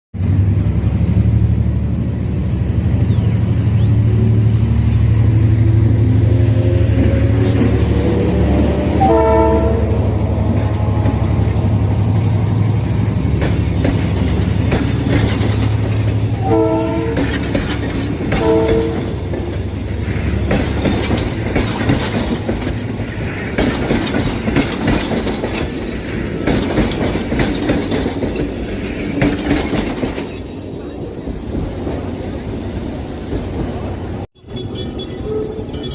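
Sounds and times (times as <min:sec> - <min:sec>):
locomotive engine running: 0:00.2 - 0:35.9
train horn blasts: 0:05.5 - 0:11.8, 0:16.3 - 0:17.6, 0:18.3 - 0:19.3
wheels clicking over rail joints: 0:10.3 - 0:30.6.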